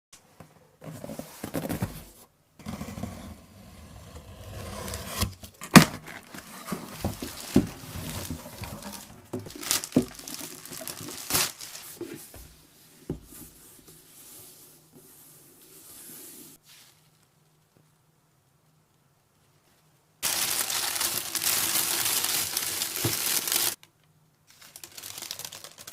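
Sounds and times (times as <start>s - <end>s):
scraping and crinkling handling: 4.3s - 17.7s, 20.2s - 23.8s.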